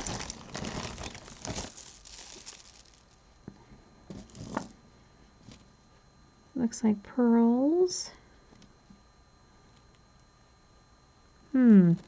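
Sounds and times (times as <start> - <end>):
plastic bag crinkling: 0.0 - 3.2.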